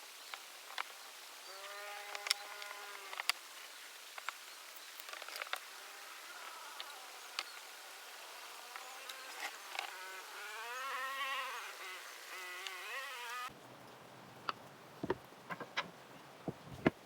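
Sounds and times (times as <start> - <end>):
insect buzzing: 0.5 - 13.5.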